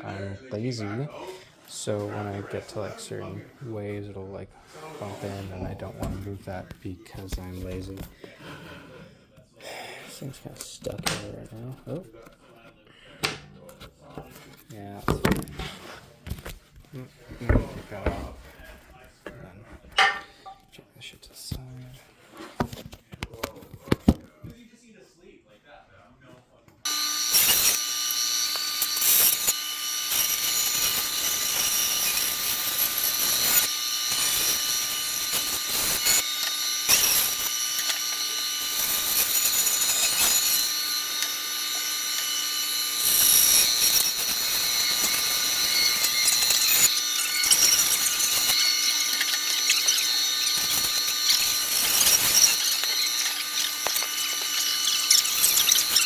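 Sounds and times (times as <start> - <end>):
power saw cutting: 4.7 - 8.2, 26.9 - 56.0.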